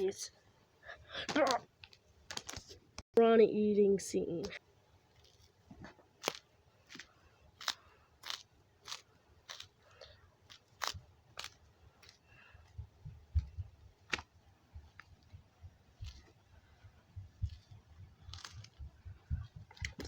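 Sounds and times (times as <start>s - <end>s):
crisp crunching of snack: 5.1s - 12.4s, 17.4s - 19.0s
soft chewing: 5.1s - 20.0s.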